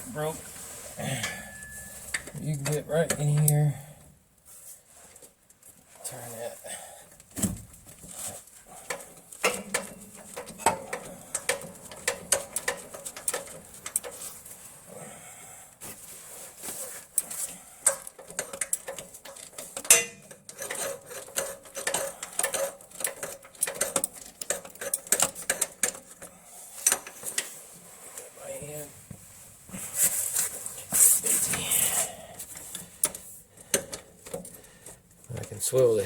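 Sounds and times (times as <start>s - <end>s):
metal tools clinking: 1.1s - 3.6s, 17.2s - 27.4s
hand ratchet clicking: 8.9s - 14.2s, 17.8s - 27.2s.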